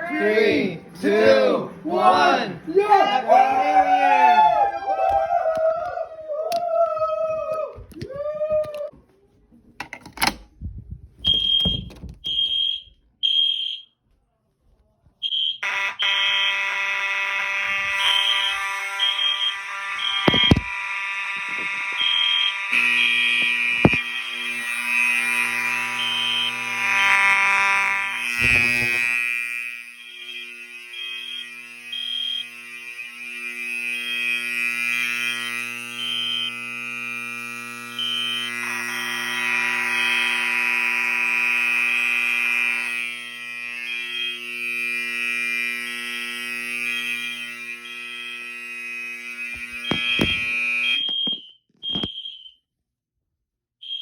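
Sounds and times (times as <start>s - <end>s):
fire alarm horns: 11.2s - 14.0s, 15.2s - 52.6s.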